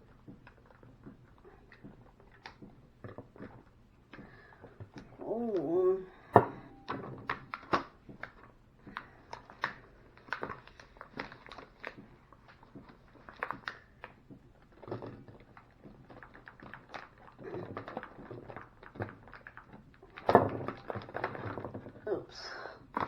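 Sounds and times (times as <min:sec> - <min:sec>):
food packaging crinkling: 0:07.5 - 0:21.9.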